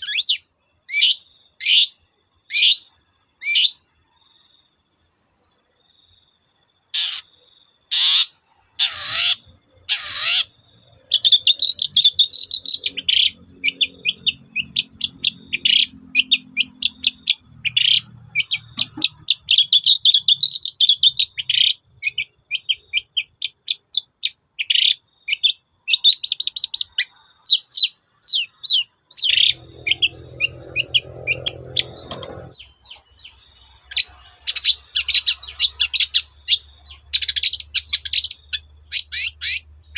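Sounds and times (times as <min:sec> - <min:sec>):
shrike singing: 0:24.6 - 0:33.4.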